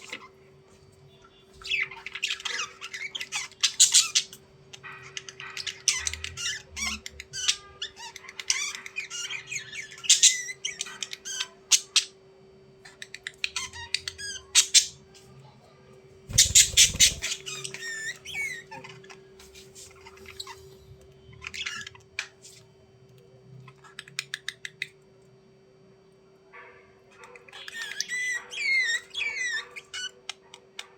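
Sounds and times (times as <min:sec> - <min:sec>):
steady low hum: 0:16.1 - 0:17.6
budgerigars chattering and squawking: 0:16.3 - 0:19.0.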